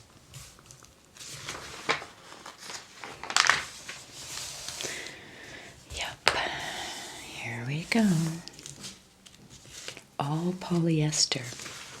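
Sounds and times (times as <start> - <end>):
paper pages rustling and turning: 0.0 - 5.2, 7.7 - 12.0.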